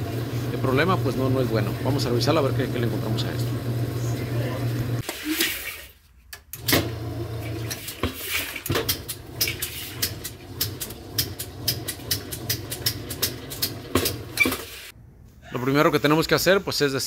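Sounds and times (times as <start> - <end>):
washing machine motor hum: 0.0 - 5.0, 6.6 - 14.9.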